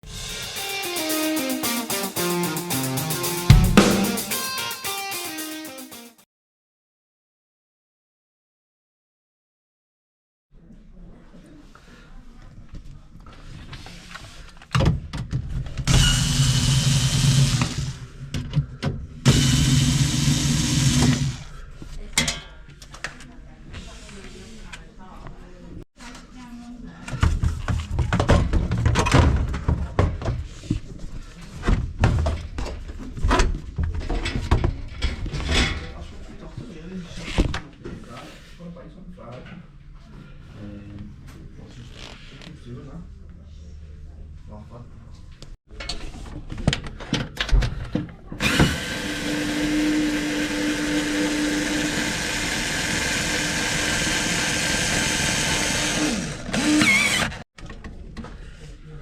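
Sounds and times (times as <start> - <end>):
small electric motor running: 15.9 - 18.0, 19.3 - 21.4, 48.4 - 57.4.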